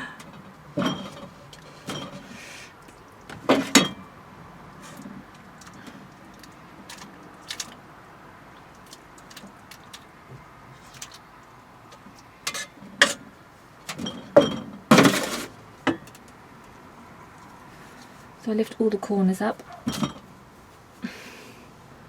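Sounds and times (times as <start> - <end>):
kitchenware knocks and clinks: 0.8 - 2.3, 3.4 - 4.1, 13.9 - 16.0, 19.9 - 20.3.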